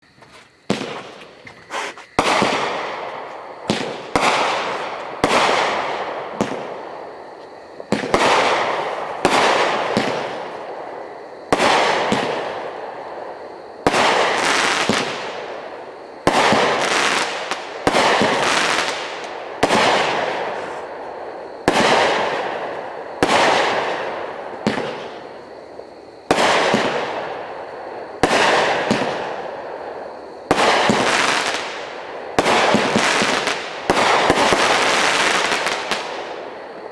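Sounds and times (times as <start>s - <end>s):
firework shots firing: 2.2s - 6.8s, 7.9s - 10.4s, 16.2s - 20.6s, 28.2s - 29.4s, 30.5s - 36.3s.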